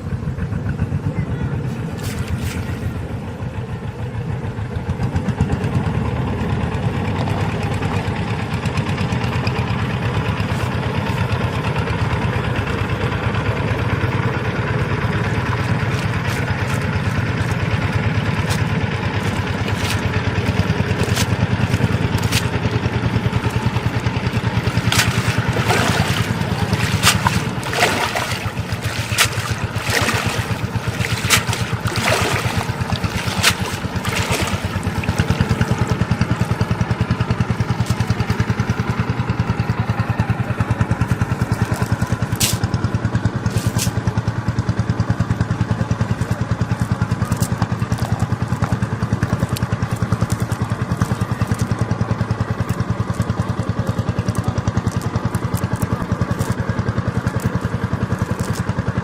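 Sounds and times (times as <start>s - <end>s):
small engine chugging: 0.0s - 59.0s
sharp knocks or splashes: 2.0s - 3.0s, 18.3s - 22.6s, 23.2s - 36.6s.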